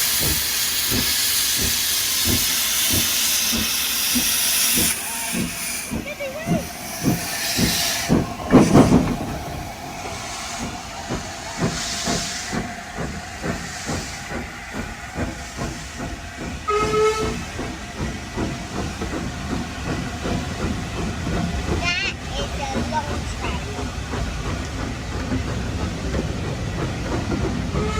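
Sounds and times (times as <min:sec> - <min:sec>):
hissing bursts: 0:00.0 - 0:21.3
train rumble: 0:00.0 - 0:27.9
train wheels knocking on rails: 0:00.0 - 0:27.9.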